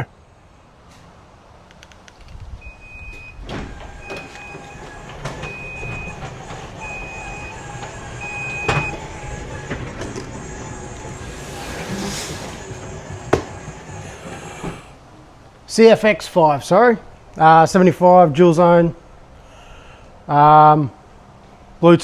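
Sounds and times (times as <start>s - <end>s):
knocks and thuds: 11.0s - 14.8s
brief hissing scrape: 11.0s - 15.0s.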